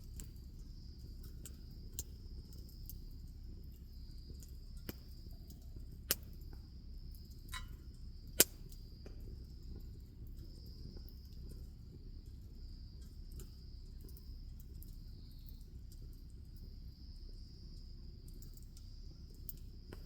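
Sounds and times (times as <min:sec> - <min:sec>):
high insect trill: 0:00.0 - 0:20.0
wood fire crackling and popping: 0:00.0 - 0:20.0.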